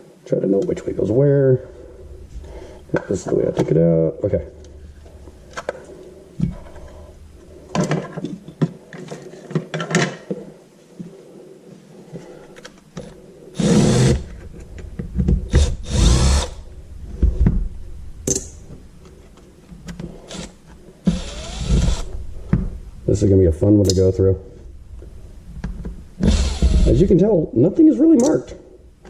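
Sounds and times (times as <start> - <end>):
cordless power drill: 13.6 - 14.3, 15.5 - 16.6, 20.3 - 22.1, 26.2 - 27.0.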